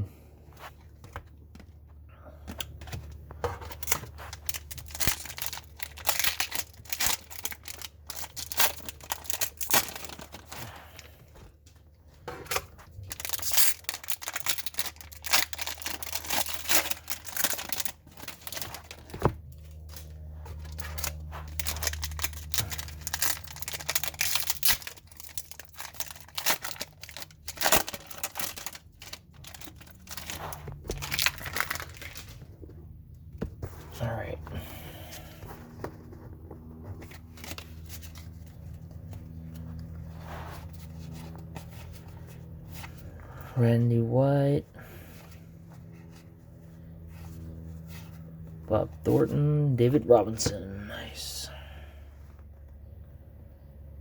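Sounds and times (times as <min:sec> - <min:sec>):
low hum: 0:00.0 - 0:54.0
wrappers tearing and crinkling: 0:03.6 - 0:11.2, 0:12.3 - 0:32.5, 0:37.0 - 0:43.1.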